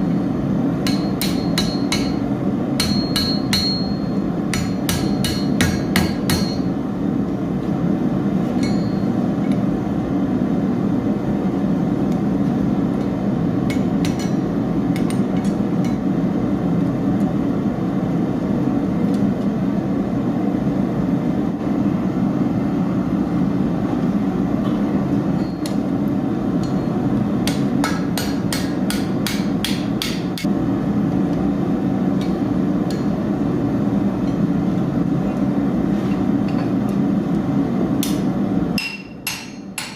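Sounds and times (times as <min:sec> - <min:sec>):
hammer striking metal on anvil: 0:00.8 - 0:02.2, 0:02.8 - 0:06.8, 0:08.6 - 0:09.2, 0:13.7 - 0:16.0, 0:26.6 - 0:30.5, 0:32.2 - 0:33.2, 0:38.8 - 0:39.9.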